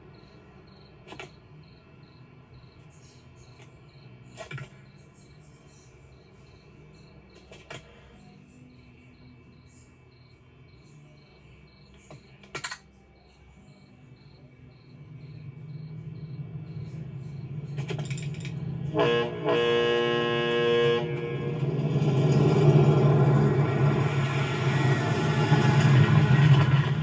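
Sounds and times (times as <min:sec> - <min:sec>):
crickets chirping: 0:00.0 - 0:27.0
low hum: 0:14.7 - 0:27.0.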